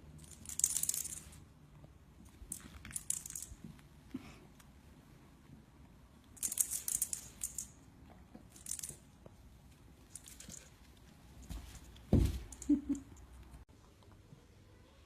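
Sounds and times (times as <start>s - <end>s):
small hard objects clinking: 2.4s - 3.7s, 6.4s - 7.8s, 8.4s - 9.1s.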